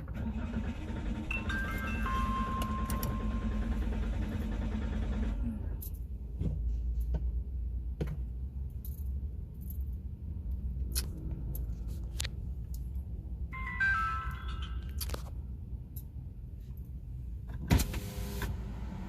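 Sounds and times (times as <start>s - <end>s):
vehicle rumble: 0.0s - 19.0s.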